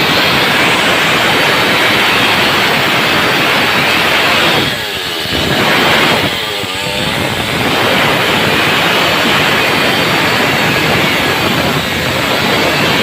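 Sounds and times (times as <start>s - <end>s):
chainsaw running at high revs: 0.0s - 13.0s.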